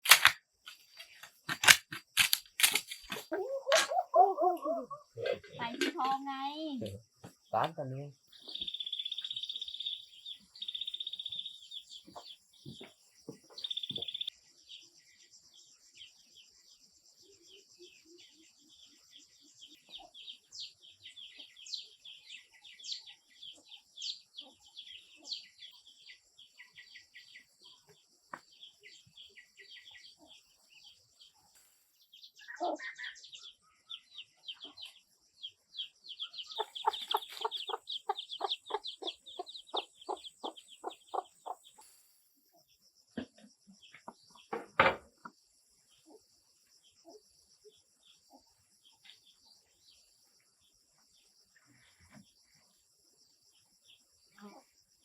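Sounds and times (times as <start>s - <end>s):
small birds chirping: 0.0s - 55.0s
chickens clucking: 2.8s - 7.7s, 8.4s - 14.3s, 36.2s - 42.0s, 43.2s - 45.4s.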